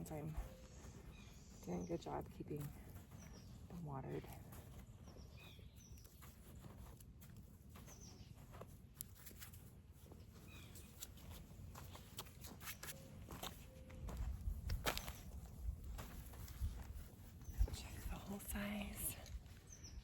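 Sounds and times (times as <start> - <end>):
distant bird chirps: 0.0 - 6.2, 7.8 - 8.4, 10.3 - 11.0
faint ticks and rustles: 0.0 - 20.0.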